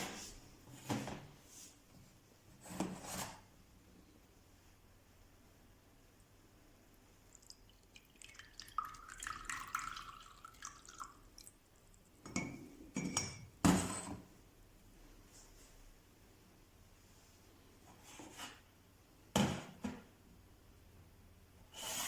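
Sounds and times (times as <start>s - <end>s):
water pouring into glass: 7.3s - 12.0s
glass and metal clinks: 12.2s - 13.5s.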